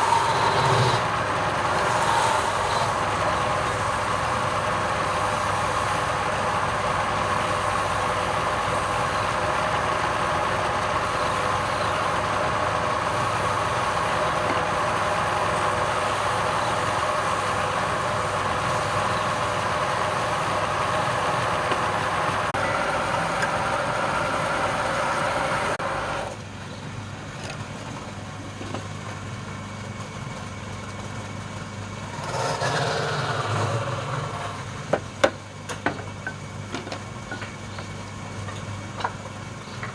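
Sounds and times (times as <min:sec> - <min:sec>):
wood lathe hissing: 0:00.0 - 0:12.4
lathe motor hum: 0:00.0 - 0:26.4.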